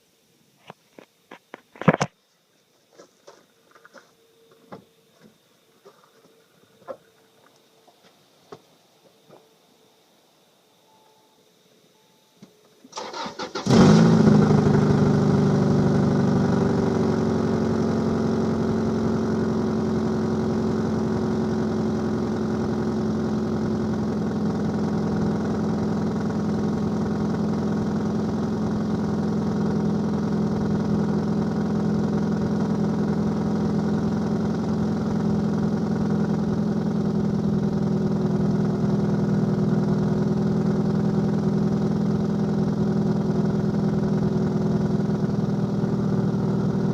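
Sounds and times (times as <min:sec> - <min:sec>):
car engine starting and idling: 0:12.8 - 0:46.9.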